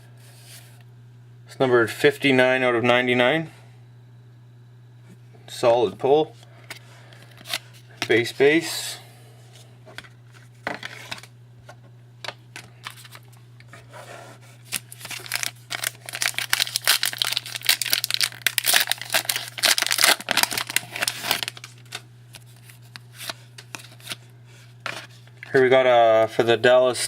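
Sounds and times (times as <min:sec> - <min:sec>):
wrapper tearing and crinkling: 0:14.6 - 0:24.2.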